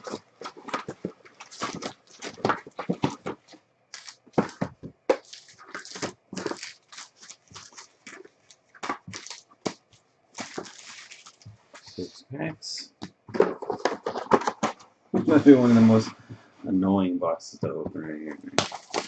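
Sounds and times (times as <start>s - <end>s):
wrappers and cardboard crinkling: 0.0s - 12.2s, 18.4s - 19.0s.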